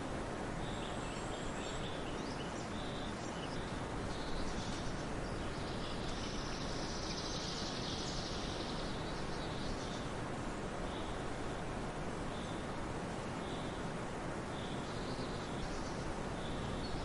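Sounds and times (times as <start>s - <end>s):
background hiss: 0.0s - 17.0s
small birds chirping: 0.6s - 10.2s, 14.5s - 17.0s.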